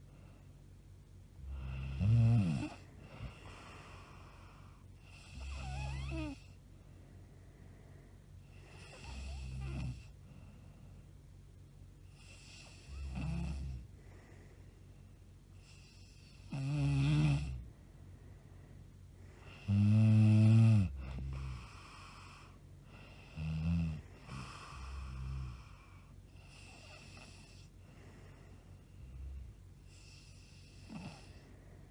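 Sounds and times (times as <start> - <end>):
woman snoring: 1.4 - 6.6, 8.5 - 10.1, 12.1 - 13.9, 15.6 - 17.7, 19.4 - 27.7, 29.2 - 31.4.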